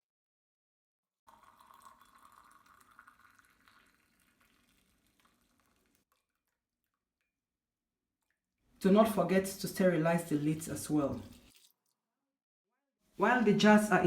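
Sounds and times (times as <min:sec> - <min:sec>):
hot water poured into glass jars: 0:01.3 - 0:06.6, 0:09.4 - 0:12.0.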